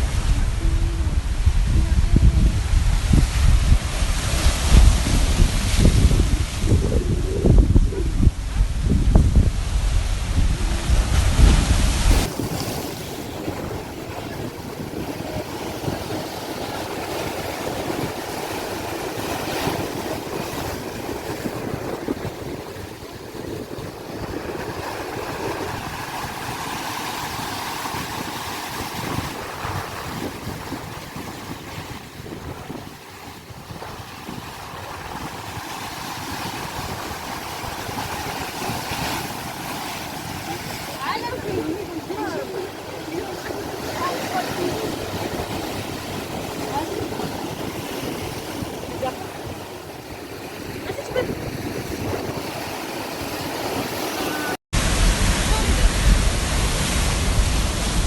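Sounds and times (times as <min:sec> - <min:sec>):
sea waves washing in: 0:00.0 - 0:58.0
loud low rumble: 0:54.8 - 0:58.0.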